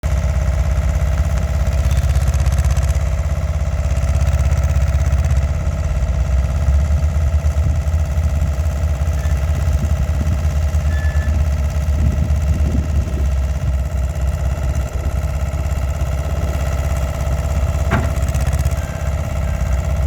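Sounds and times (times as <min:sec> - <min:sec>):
paver engine running: 0:00.0 - 0:20.0.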